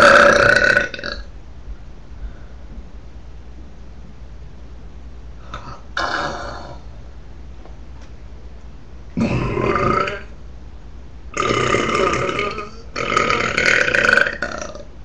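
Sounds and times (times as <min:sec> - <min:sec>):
person belching loudly: 0:00.0 - 0:01.3, 0:05.6 - 0:06.8, 0:09.2 - 0:10.3, 0:11.4 - 0:14.9.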